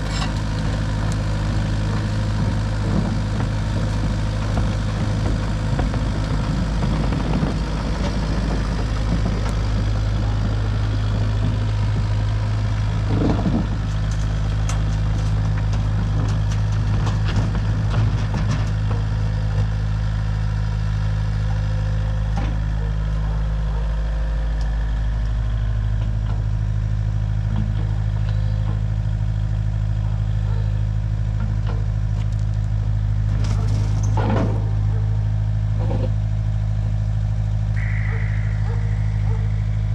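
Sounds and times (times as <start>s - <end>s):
engine running steadily: 0.0s - 39.9s
knocks and rattles: 13.0s - 19.2s.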